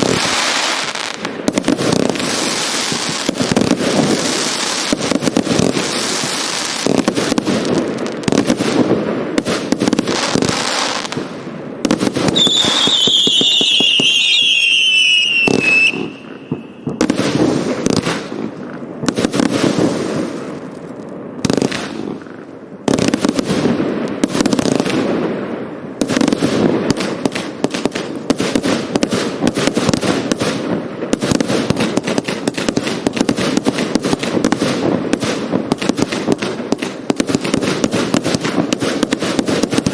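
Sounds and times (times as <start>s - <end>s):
firework shots and crackling: 0.0s - 39.9s
descending firework whistle: 12.3s - 17.1s.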